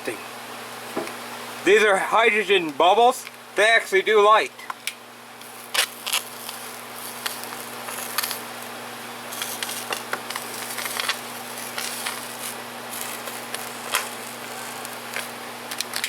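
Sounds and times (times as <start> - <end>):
battery charger hum: 4.7 - 16.0.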